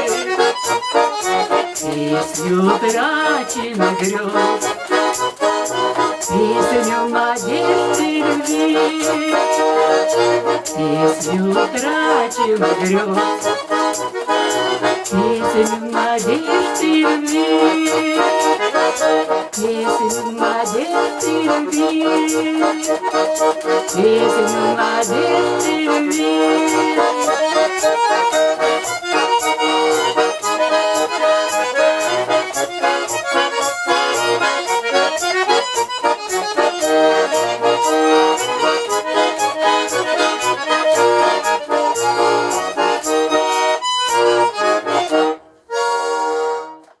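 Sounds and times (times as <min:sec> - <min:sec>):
button accordion playing: 0:00.0 - 0:47.0.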